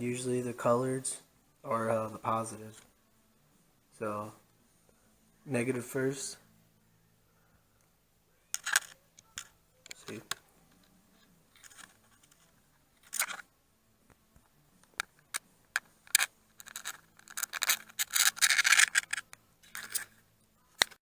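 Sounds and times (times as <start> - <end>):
wires scratching and rubbing: 8.5 - 13.5, 14.8 - 20.2
wire connectors clicking: 14.8 - 20.1.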